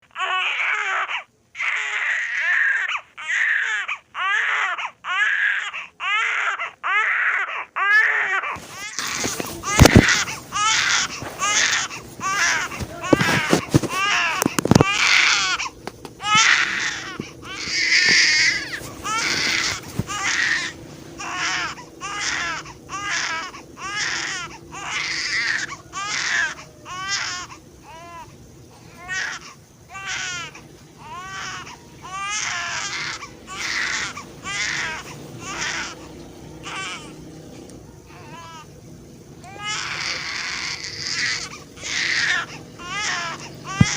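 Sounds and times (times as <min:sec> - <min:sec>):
baby crying: 0:00.1 - 0:28.3, 0:28.9 - 0:37.2, 0:38.1 - 0:38.7, 0:39.4 - 0:43.9.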